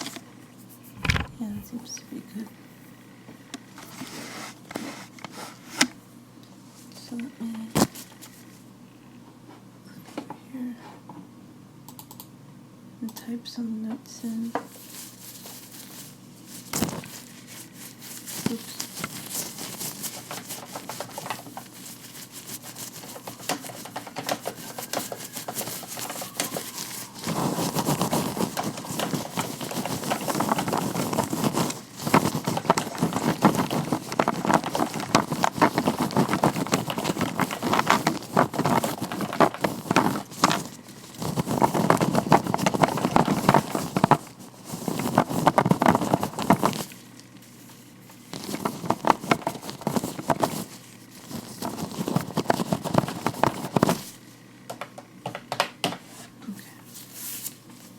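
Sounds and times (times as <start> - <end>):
gloved hands rubbing: 0.0 - 1.8, 14.8 - 54.3.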